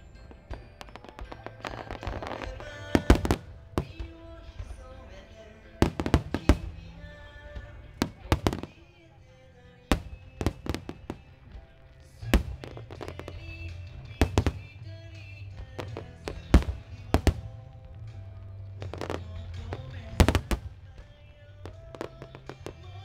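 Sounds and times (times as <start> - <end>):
firework shells bursting: 0.0 - 9.2, 9.8 - 23.0
music playing: 0.0 - 23.0.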